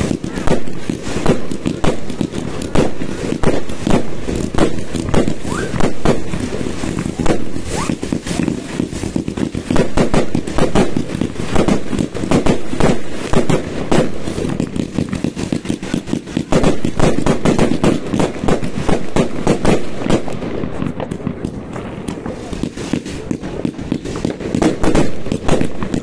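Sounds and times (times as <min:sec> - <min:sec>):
fireworks bangs and crackles: 0:00.0 - 0:26.0.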